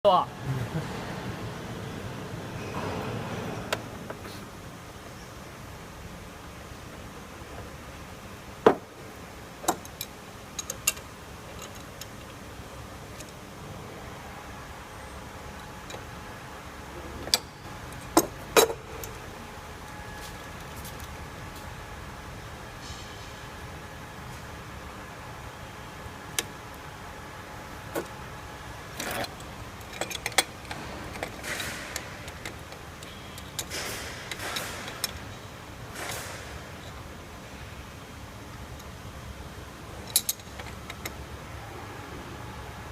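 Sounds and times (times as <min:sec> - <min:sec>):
steady low hum: 0:00.0 - 0:42.9
metal parts clicking: 0:28.9 - 0:37.0, 0:40.0 - 0:41.2.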